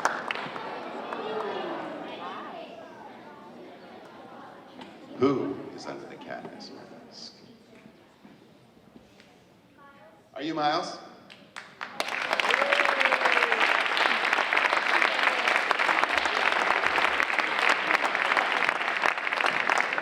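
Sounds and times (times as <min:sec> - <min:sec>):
audience applauding: 0:00.0 - 0:02.7, 0:11.6 - 0:20.0
faint voices: 0:00.5 - 0:10.2.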